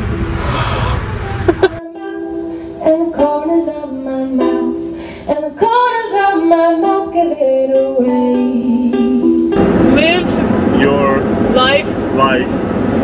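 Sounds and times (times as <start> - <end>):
ukulele plucked tune: 1.2 - 4.9, 5.7 - 10.9.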